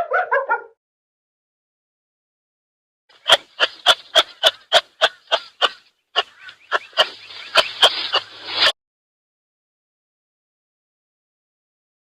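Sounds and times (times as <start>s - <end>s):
animal giving sharp calls: 3.2s - 8.7s.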